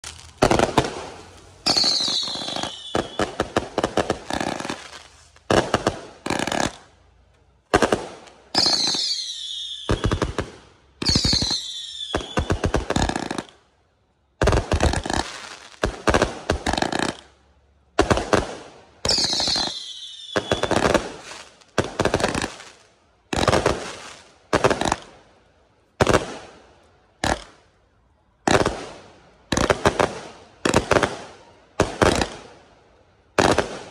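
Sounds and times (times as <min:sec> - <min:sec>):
firework falling whistles: 0:00.0 - 0:06.8, 0:08.0 - 0:13.6, 0:19.0 - 0:21.6
firework aerial bursts: 0:00.0 - 0:06.9, 0:07.7 - 0:13.6
firework crackling: 0:00.0 - 0:13.6, 0:14.4 - 0:17.4, 0:18.0 - 0:25.3, 0:28.4 - 0:32.7, 0:33.3 - 0:33.9.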